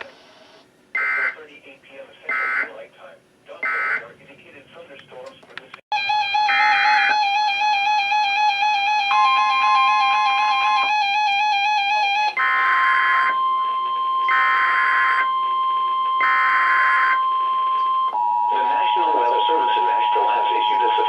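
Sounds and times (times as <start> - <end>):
steady weather radio warning tone: 16.8 - 21.0.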